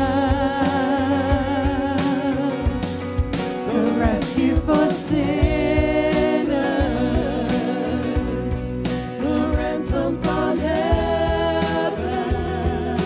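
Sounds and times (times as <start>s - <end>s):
people singing: 0.0s - 2.9s, 3.5s - 13.0s
worship band with drums: 0.0s - 13.0s.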